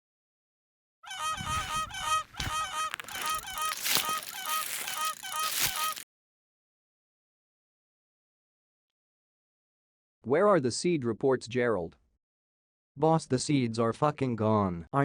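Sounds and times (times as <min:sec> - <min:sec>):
geese honking: 0:01.1 - 0:06.0.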